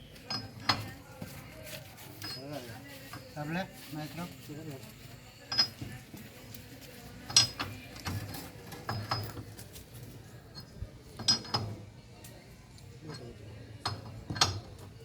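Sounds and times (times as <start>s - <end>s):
metal tools clinking: 2.2s - 3.3s, 10.5s - 11.7s.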